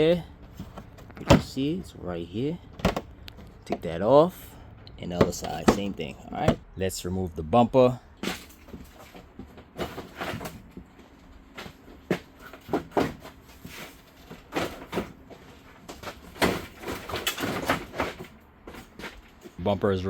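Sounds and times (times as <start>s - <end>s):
plastic clips snapping and clattering: 16.4s - 18.3s.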